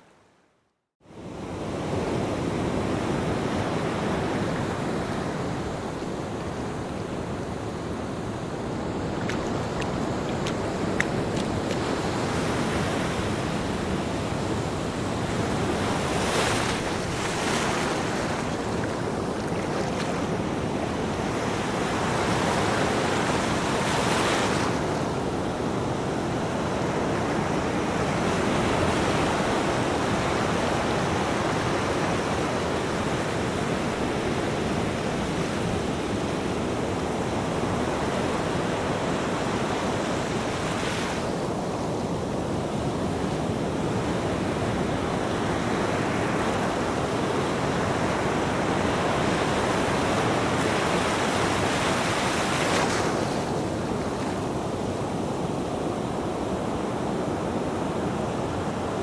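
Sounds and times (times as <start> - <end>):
ocean waves on a beach: 1.0 - 59.0.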